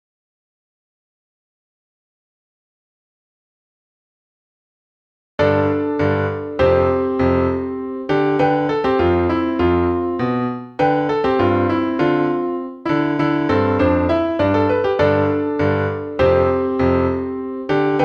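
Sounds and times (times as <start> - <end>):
electric piano chords: 5.4 - 18.0.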